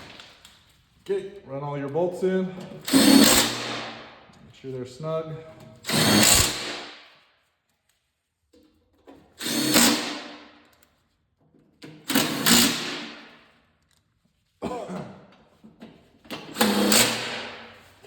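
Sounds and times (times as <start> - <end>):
power drill driving bolts: 2.7 - 3.9, 5.8 - 6.8, 9.4 - 10.4, 12.0 - 13.2, 16.3 - 17.7.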